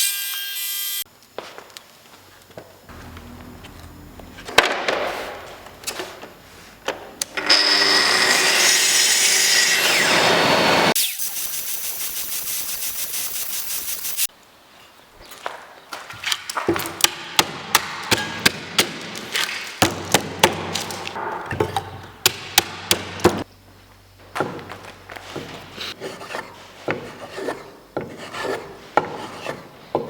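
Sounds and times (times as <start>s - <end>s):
machine cutting wood: 2.9s - 4.8s, 7.3s - 11.7s.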